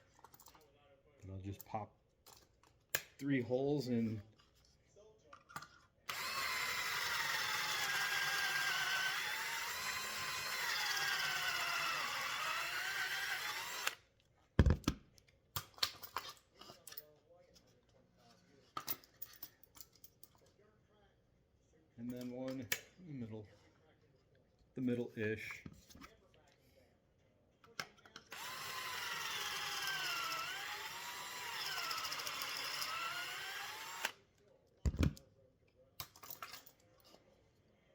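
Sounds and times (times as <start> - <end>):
cordless drill motor whine: 6.1 - 14.0, 28.3 - 34.2.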